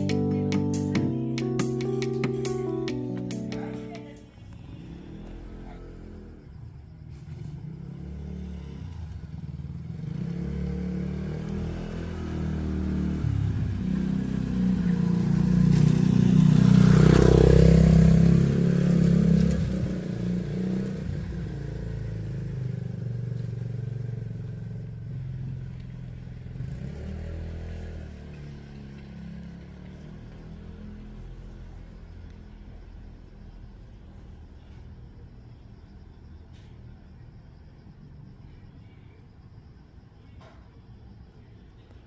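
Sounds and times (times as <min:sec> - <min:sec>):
vehicle engine passing by: 0:04.3 - 0:33.0.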